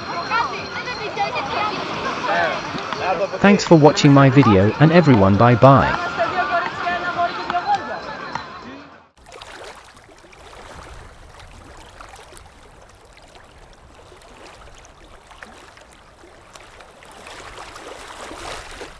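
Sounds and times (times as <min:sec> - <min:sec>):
sea water washing ashore: 0:00.0 - 0:07.2, 0:09.2 - 0:18.9.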